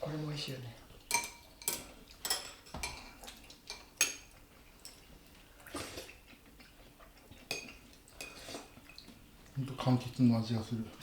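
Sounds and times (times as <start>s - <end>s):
cutlery clinking on ceramic dishes: 1.1s - 3.1s, 7.4s - 8.5s.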